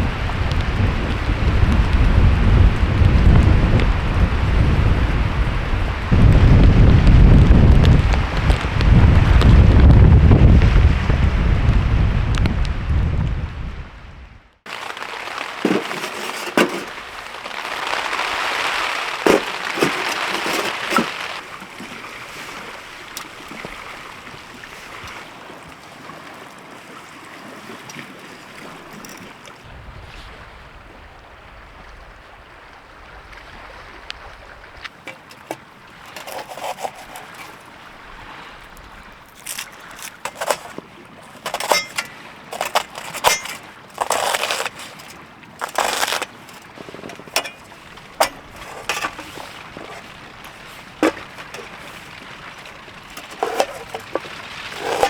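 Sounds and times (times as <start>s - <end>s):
storm wind gusting: 0.0s - 14.5s
rain hissing: 14.7s - 21.5s
sharp clicks and knocks: 35.1s - 37.5s.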